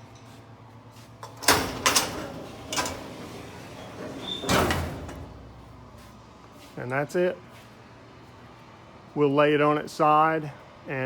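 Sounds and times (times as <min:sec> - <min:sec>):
steel door banging shut: 0:01.3 - 0:05.7.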